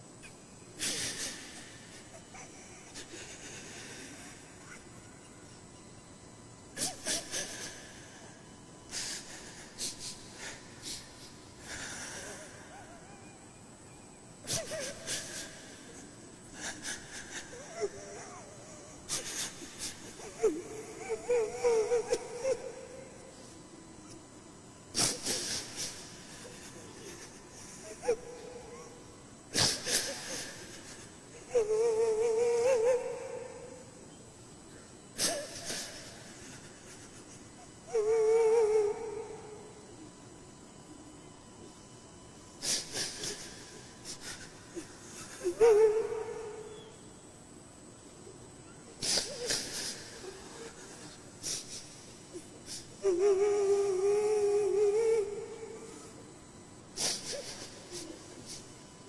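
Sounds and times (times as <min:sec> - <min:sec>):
wavering held moan: 0:00.0 - 0:42.0, 0:42.6 - 0:47.1, 0:49.0 - 0:58.8
sobbing gasp: 0:00.2 - 0:05.1, 0:06.8 - 0:13.5, 0:14.4 - 0:24.3, 0:24.9 - 0:34.0, 0:35.0 - 0:40.0, 0:42.6 - 0:47.0, 0:49.0 - 0:56.4, 0:57.0 - 0:58.8
man weeping during recitation: 0:00.8 - 0:04.9, 0:09.0 - 0:13.5, 0:14.4 - 0:24.2, 0:25.0 - 0:34.0, 0:35.0 - 0:40.0, 0:42.6 - 0:46.8, 0:49.0 - 0:56.3, 0:57.0 - 0:58.7
man reciting a long melodic note: 0:52.7 - 0:56.2.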